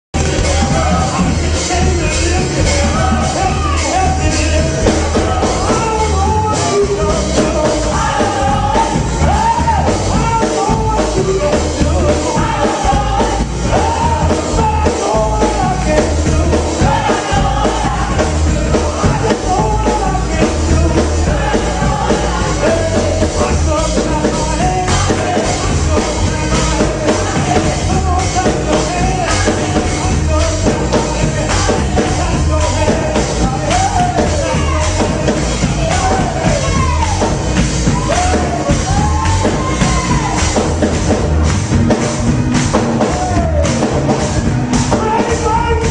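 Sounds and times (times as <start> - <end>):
heavy bass and drum beat: 0.1 - 45.9
people singing: 0.2 - 41.4
live band playing: 0.2 - 45.9.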